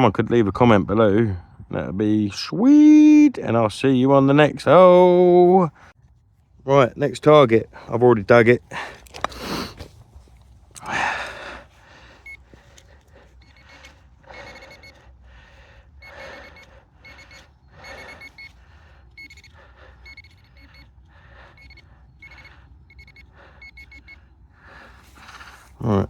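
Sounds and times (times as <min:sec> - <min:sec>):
metal detector beeping: 0:12.2 - 0:12.5, 0:13.4 - 0:15.0, 0:16.0 - 0:24.3
soil rustling: 0:24.6 - 0:26.0.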